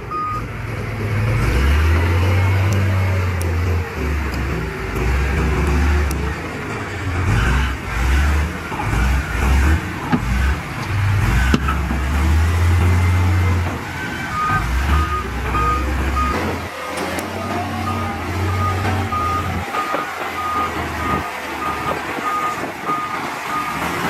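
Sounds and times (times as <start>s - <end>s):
heavy diesel machinery running: 0.0s - 24.0s
reverse alarm beeping: 0.1s - 0.5s, 14.3s - 16.7s, 17.4s - 23.9s.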